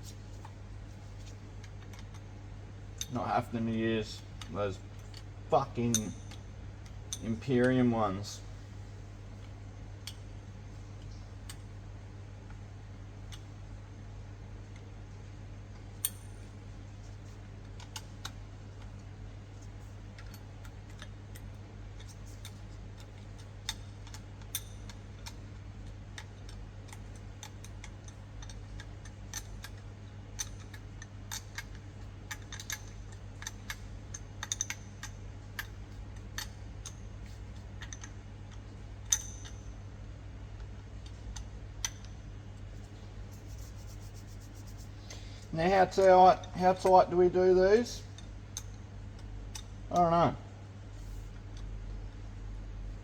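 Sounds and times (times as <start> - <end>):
steady low hum: 0.0 - 53.0
spanner clicking on bolts: 20.2 - 37.0, 37.8 - 39.6.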